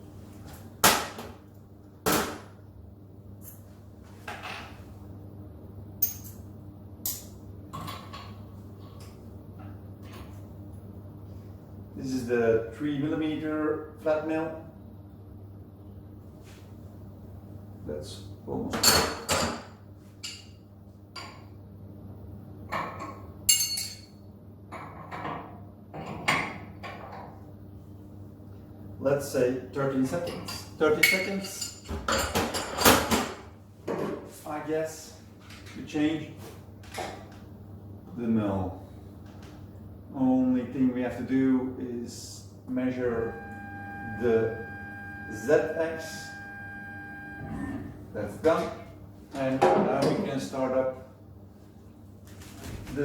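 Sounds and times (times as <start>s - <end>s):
steady low hum: 0.0s - 24.7s, 33.5s - 53.0s
low steady hum: 27.2s - 53.0s.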